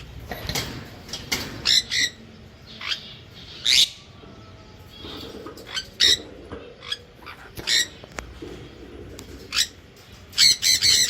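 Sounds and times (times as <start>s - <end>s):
parrots squawking: 1.6s - 4.1s, 5.2s - 8.2s, 9.2s - 11.0s.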